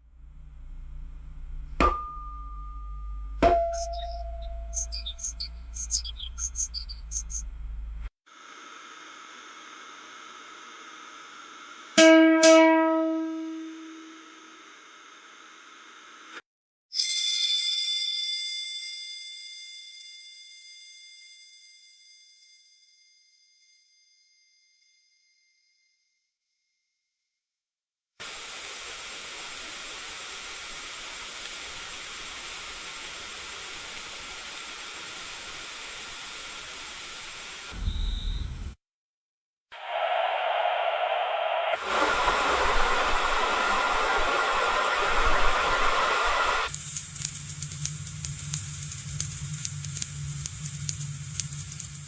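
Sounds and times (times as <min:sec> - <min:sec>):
background hiss: 0:00.0 - 0:12.0, 0:28.2 - 0:38.8, 0:41.6 - 0:52.0
struck hits with ringing tone: 0:01.4 - 0:06.0, 0:12.0 - 0:13.9, 0:37.7 - 0:38.8
bright high ringing tone: 0:01.8 - 0:06.6, 0:12.0 - 0:14.2, 0:17.0 - 0:26.2.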